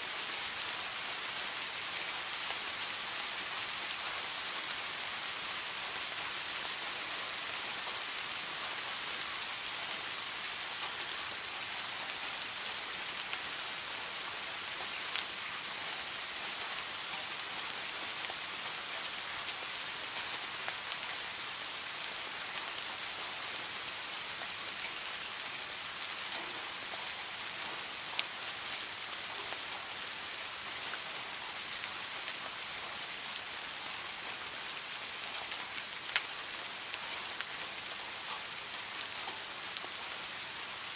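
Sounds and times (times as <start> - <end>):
steady rain hiss: 0.0 - 40.9.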